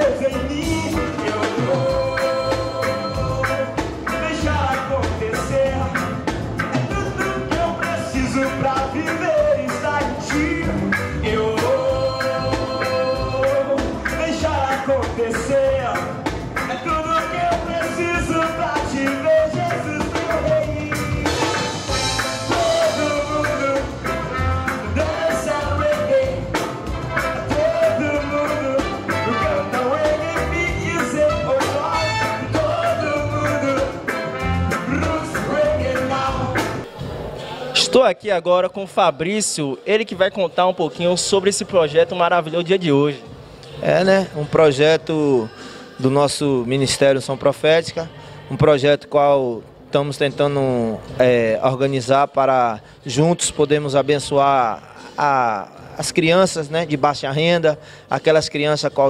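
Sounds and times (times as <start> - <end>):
singing: 0.0 - 6.0, 6.9 - 16.0, 22.4 - 37.8
steady drum beat: 0.0 - 37.2
live gospel band: 0.0 - 48.6, 49.4 - 59.0.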